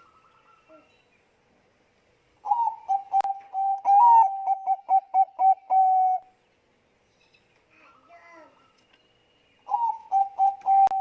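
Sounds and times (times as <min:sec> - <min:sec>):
dove cooing: 0:02.4 - 0:06.3, 0:09.7 - 0:11.0.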